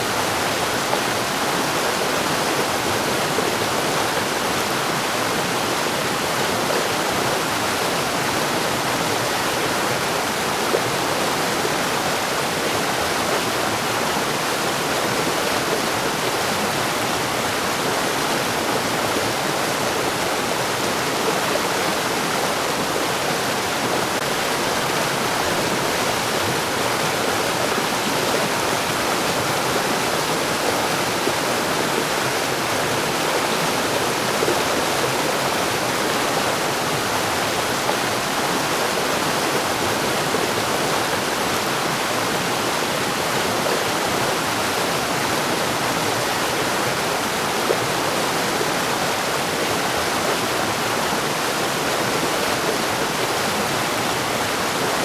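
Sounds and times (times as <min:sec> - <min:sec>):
stream rushing over rocks: 0:00.0 - 0:55.0.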